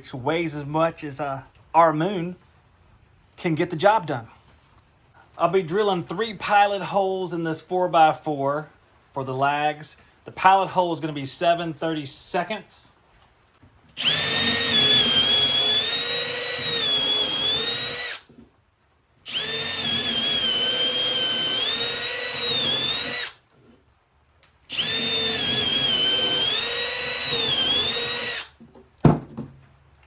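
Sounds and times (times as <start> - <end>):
power drill boring into wood: 14.0 - 18.3, 19.3 - 23.4, 24.7 - 28.6.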